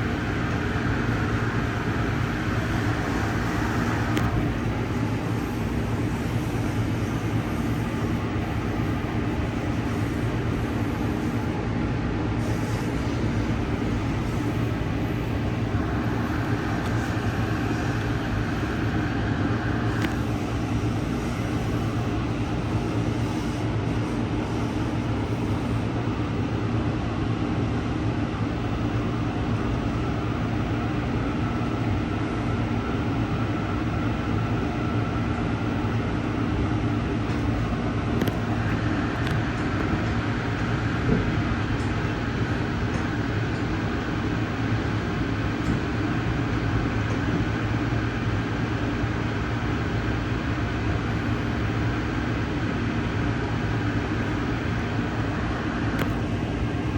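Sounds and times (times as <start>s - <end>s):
faint high whine: 0.0s - 26.0s
train wheels rumbling on rails: 0.0s - 28.5s, 34.2s - 56.9s.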